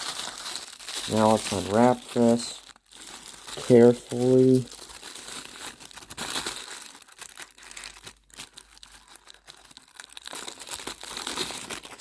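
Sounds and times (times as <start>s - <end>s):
packaging crinkling and tearing: 0.0s - 12.0s.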